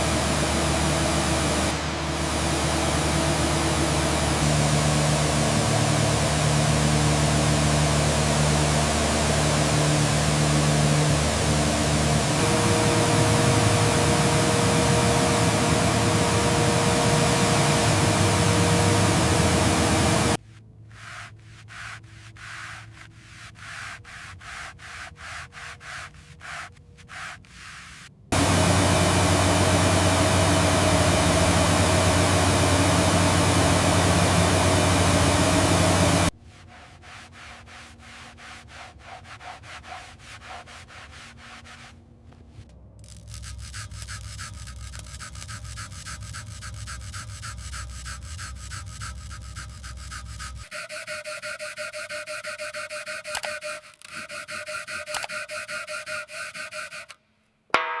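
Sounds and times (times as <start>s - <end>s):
power tool running: 0.0s - 20.4s, 28.3s - 36.3s, 43.0s - 57.2s
sanding strokes on hard surface: 12.2s - 28.1s, 36.4s - 42.0s, 43.2s - 57.2s.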